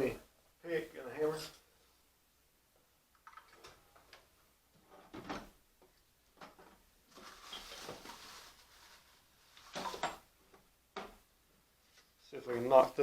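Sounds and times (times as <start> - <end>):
handling rustle: 7.1 - 10.1.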